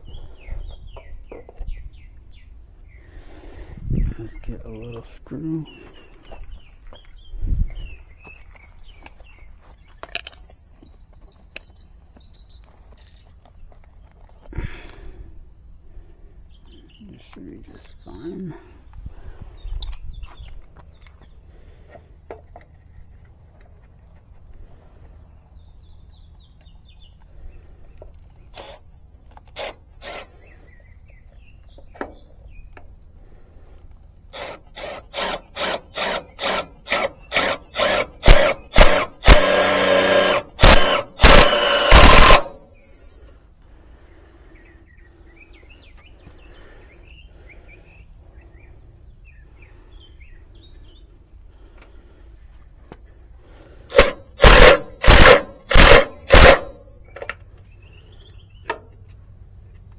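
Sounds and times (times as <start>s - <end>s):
power drill driving screw: 28.5s - 28.8s, 29.4s - 30.3s, 34.3s - 42.7s, 53.9s - 56.8s.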